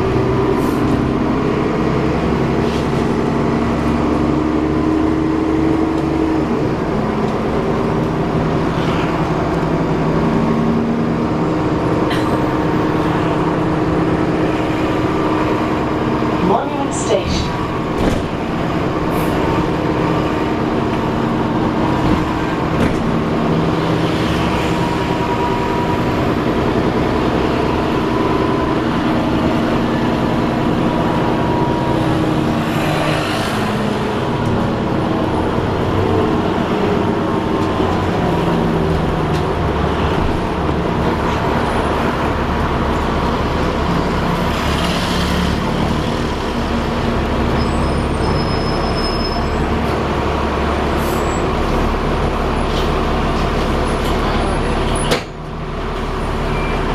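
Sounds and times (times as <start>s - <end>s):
bus drivetrain whirring: 0.0s - 56.9s.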